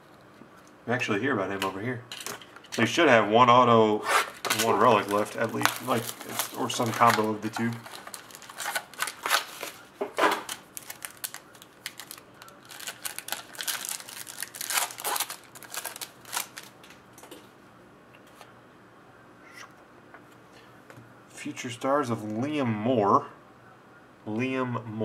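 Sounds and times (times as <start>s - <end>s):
cards and packaging rustling: 4.2s - 17.0s.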